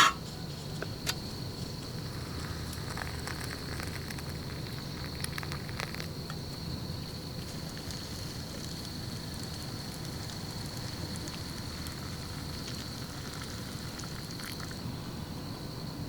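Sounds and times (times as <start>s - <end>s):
raindrops ticking sharply: 7.4s - 14.8s
steady rain: 7.4s - 14.9s.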